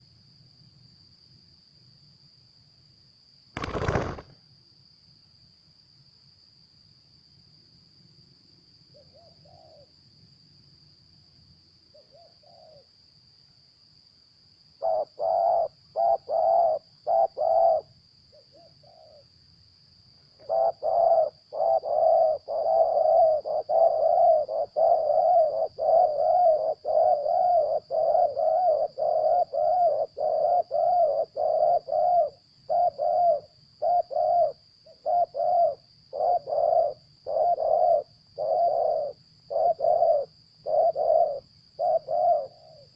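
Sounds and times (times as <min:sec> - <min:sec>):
dove cooing: 0:03.6 - 0:04.3, 0:09.0 - 0:09.9, 0:12.0 - 0:12.8, 0:14.8 - 0:17.9, 0:20.4 - 0:42.9.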